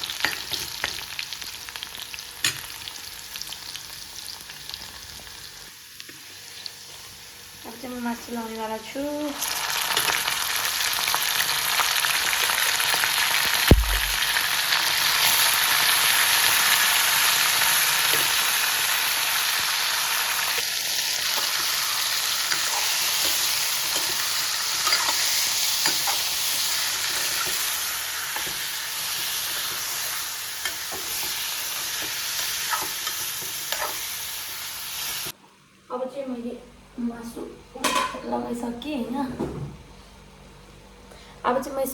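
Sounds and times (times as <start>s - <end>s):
meat sizzling in hot oil: 0.0s - 7.6s, 9.4s - 35.4s
sharp knock: 13.7s - 14.2s.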